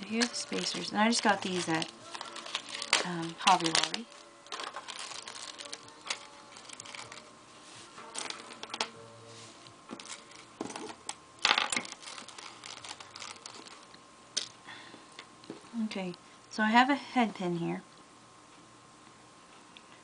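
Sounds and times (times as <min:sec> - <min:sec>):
small beads clicking and rustling: 0:00.2 - 0:07.3, 0:08.1 - 0:08.9, 0:09.9 - 0:14.6.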